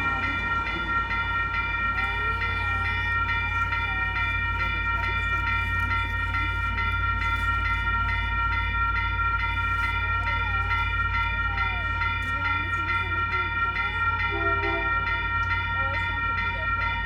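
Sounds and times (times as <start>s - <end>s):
steady low rumble: 0.0s - 11.8s
electronic crossing bell ringing: 0.0s - 17.0s.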